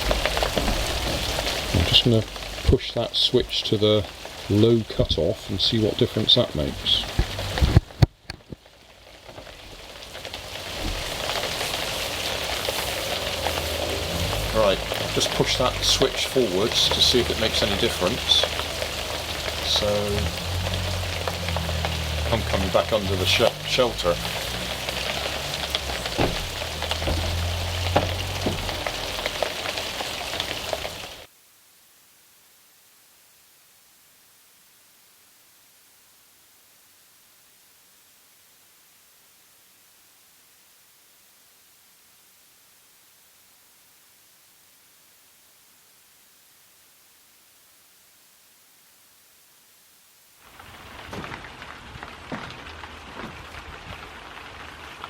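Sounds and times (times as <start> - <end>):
rain pattering: 0.0 - 31.4, 50.0 - 55.0.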